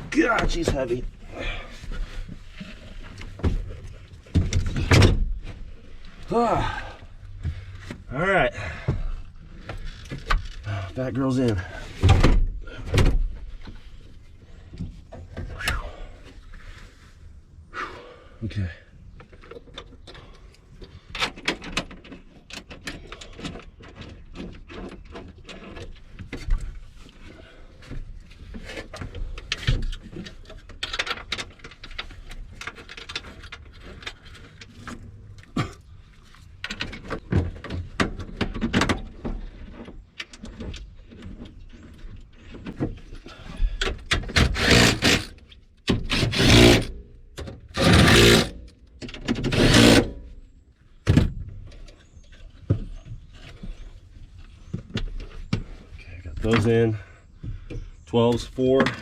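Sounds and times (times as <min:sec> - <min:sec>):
parts rattling and scraping: 0:00.0 - 0:15.6, 0:19.1 - 0:59.0
tools clicking and knocking: 0:43.8 - 0:50.2.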